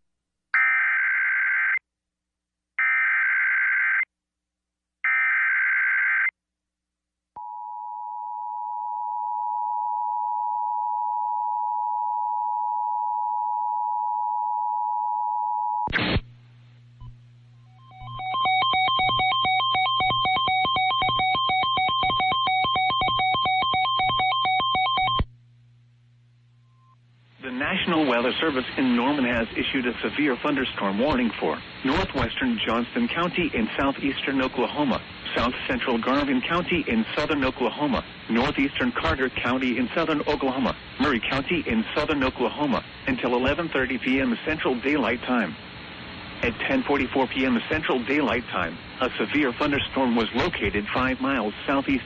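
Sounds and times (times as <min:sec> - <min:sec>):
low hum: 0:16.0 - 0:21.2, 0:25.1 - 0:29.4
steady warning alarm tone: 0:17.7 - 0:25.3.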